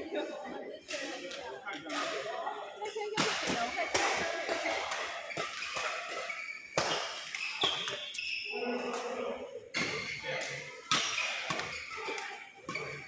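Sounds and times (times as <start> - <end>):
short high shoe squeaks: 5.4 - 8.5.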